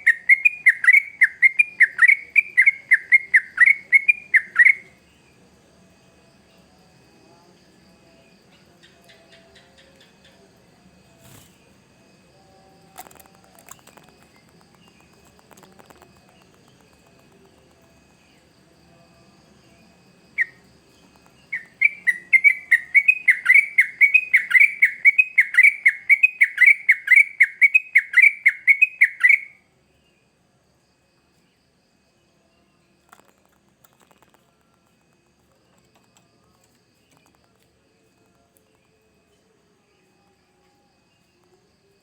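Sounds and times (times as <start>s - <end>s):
bird calling repeated notes: 0.0s - 4.8s, 21.5s - 29.5s.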